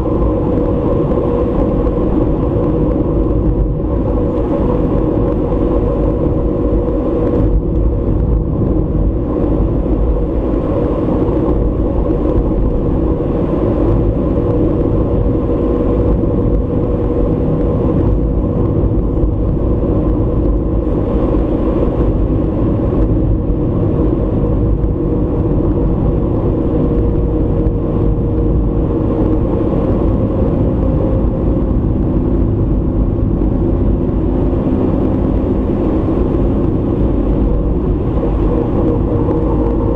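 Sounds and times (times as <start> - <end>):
car engine and road noise: 0.0 - 39.9
low hum: 0.0 - 39.9.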